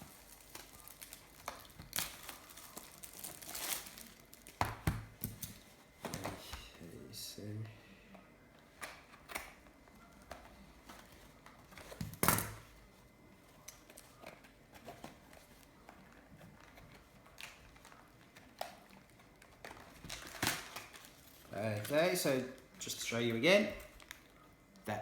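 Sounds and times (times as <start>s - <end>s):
card packs clicking and rustling: 0.0s - 6.7s, 13.7s - 24.4s.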